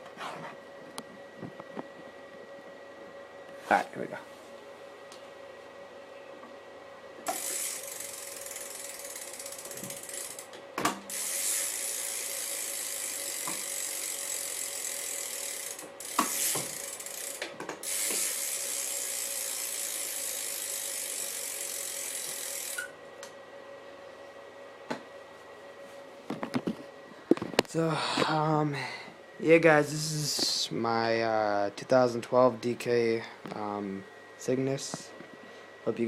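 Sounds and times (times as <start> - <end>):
bike hub ratchet clicking: 7.2 - 22.9.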